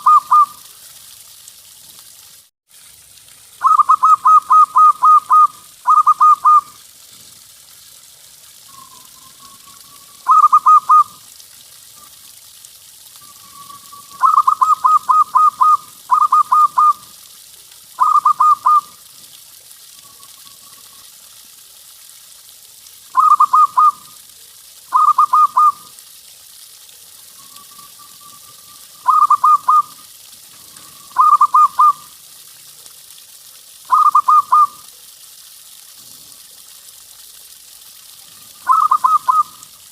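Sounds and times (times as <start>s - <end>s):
dove cooing: 3.6s - 6.7s, 10.2s - 11.1s, 13.5s - 17.0s, 18.0s - 18.9s, 23.2s - 24.0s, 24.9s - 25.8s, 27.8s - 30.0s, 30.7s - 32.0s, 33.9s - 34.8s, 38.6s - 39.6s.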